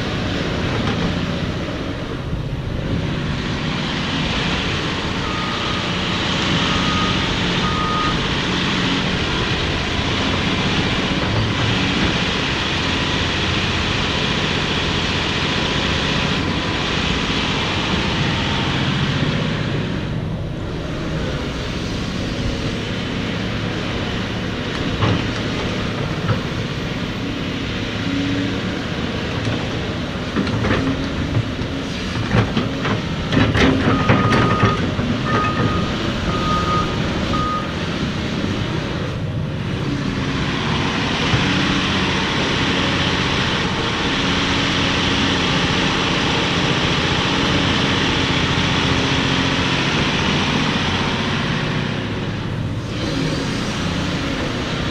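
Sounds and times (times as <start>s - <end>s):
excavator diesel engine running: 0.0s - 54.9s
hydraulics rushing: 0.0s - 54.9s
short alarm beeps: 5.2s - 5.9s, 6.7s - 8.2s, 33.9s - 37.7s
knocks and clanks: 24.7s - 26.6s, 30.3s - 35.8s.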